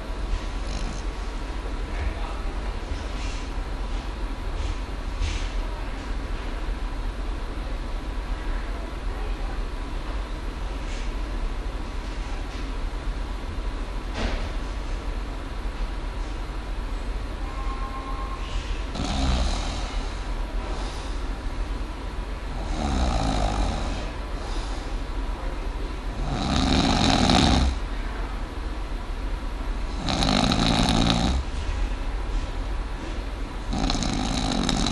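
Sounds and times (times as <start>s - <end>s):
person snoring: 0.6s - 1.1s, 18.9s - 20.2s, 22.5s - 24.2s, 26.2s - 27.8s, 29.9s - 31.5s, 33.6s - 34.9s.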